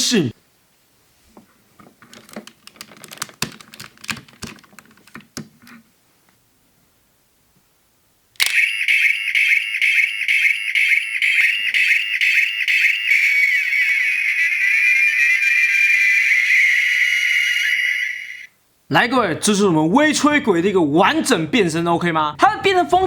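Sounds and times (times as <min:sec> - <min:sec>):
plastic toy clicks: 0:02.0 - 0:05.5
pulsing electronic whistle: 0:08.4 - 0:18.5.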